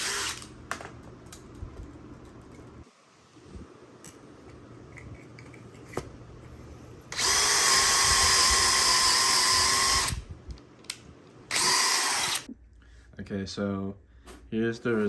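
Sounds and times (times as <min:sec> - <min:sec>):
electric drill motor running: 0:00.0 - 0:00.6, 0:07.1 - 0:10.3, 0:11.5 - 0:12.5.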